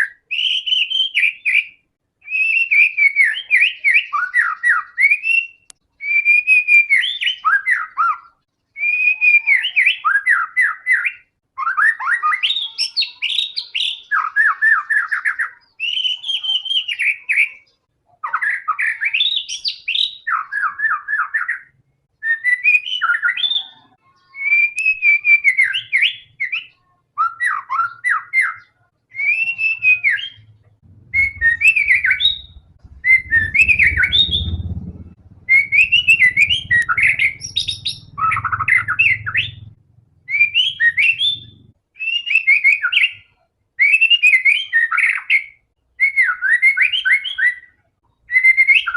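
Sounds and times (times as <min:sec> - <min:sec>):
bird whistled song: 0:00.0 - 0:48.9
low rumble: 0:30.3 - 0:41.8.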